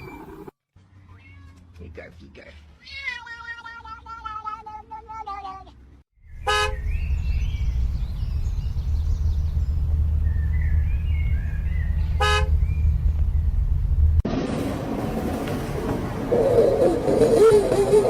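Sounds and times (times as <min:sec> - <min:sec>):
engine and road rumble: 0:05.3 - 0:18.0
vehicle horn toots: 0:06.4 - 0:06.8, 0:12.2 - 0:12.6.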